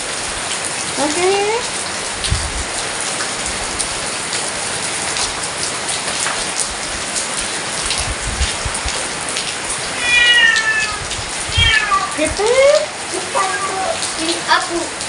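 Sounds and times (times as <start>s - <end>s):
heavy rain falling: 0.0s - 15.0s
cat meowing: 9.9s - 14.2s.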